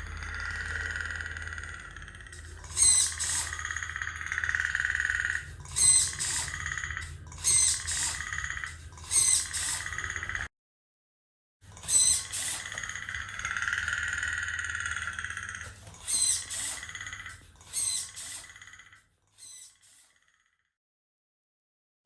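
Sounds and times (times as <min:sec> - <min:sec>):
servo motor whining: 0:02.3 - 0:10.5, 0:11.7 - 0:20.1.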